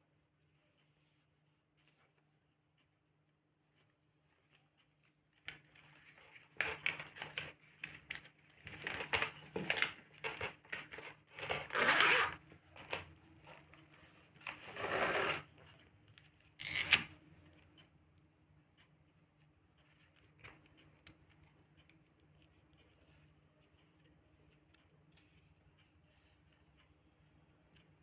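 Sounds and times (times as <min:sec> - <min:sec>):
objects rubbed and scraped by hand: 0:14.6 - 0:15.5.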